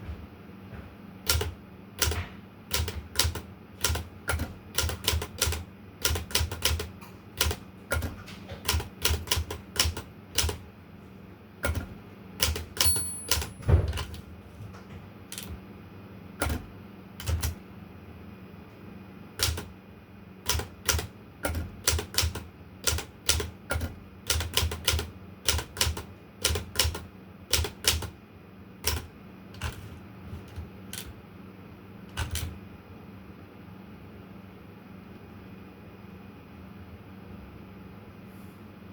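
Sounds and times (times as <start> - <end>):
typewriter key strikes: 1.3 - 10.6, 11.6 - 14.2, 16.4 - 17.6, 19.4 - 19.7, 20.5 - 28.1, 28.8 - 31.1, 32.1 - 32.5
typewriter carriage clunk: 11.6 - 14.2, 28.8 - 31.1, 32.1 - 32.5
typewriter margin bell ring: 12.8 - 13.7.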